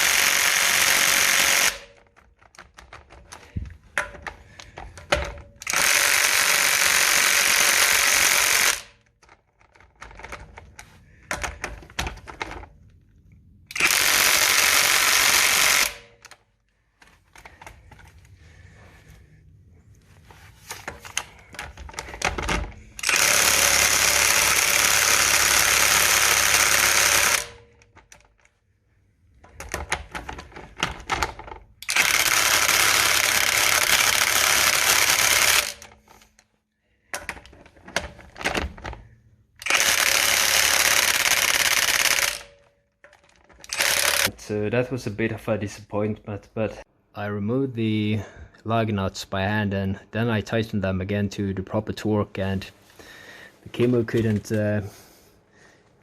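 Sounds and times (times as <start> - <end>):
impact driver hammering: 0.0 - 1.9, 22.2 - 27.6, 39.6 - 42.5
tool clicks and clatter: 0.0 - 13.1, 13.7 - 18.7, 20.3 - 28.6, 29.3 - 44.4.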